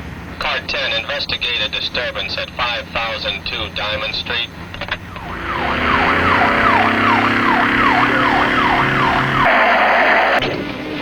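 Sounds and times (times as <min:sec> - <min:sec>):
police siren yelping: 0:05.0 - 0:10.4.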